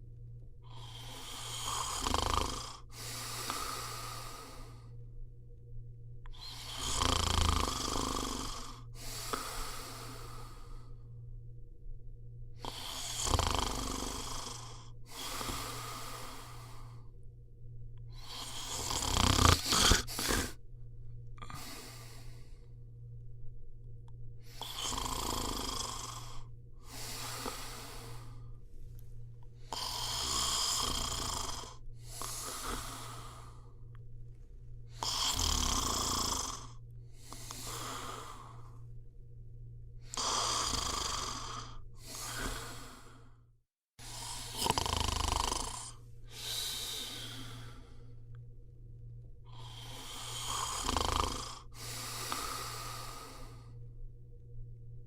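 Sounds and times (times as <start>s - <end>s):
faint steady hum: 0.0s - 55.0s
person snoring: 0.6s - 5.0s, 6.3s - 11.1s, 12.6s - 17.2s, 18.1s - 20.6s, 21.3s - 22.8s, 24.4s - 28.6s, 29.6s - 33.9s, 34.9s - 38.9s, 40.0s - 43.4s, 44.0s - 48.4s, 49.5s - 53.8s.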